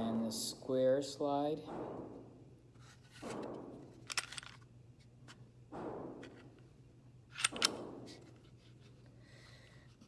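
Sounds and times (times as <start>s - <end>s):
pistol clicking: 7.4s - 7.9s.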